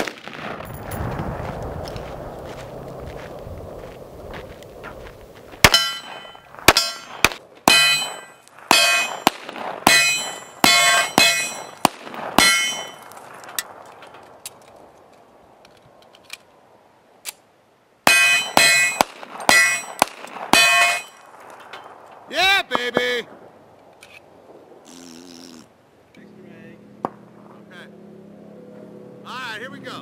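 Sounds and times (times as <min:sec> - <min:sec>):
gunshots: 0:00.0 - 0:00.9, 0:05.6 - 0:13.4, 0:18.1 - 0:21.4
steel targets ringing: 0:05.6 - 0:11.8, 0:12.4 - 0:13.1, 0:18.1 - 0:21.3.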